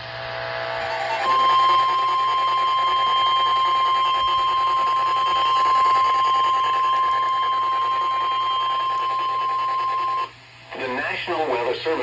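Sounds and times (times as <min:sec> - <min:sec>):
loud high alarm tone: 0:00.6 - 0:10.4
radio hiss: 0:09.8 - 0:12.0.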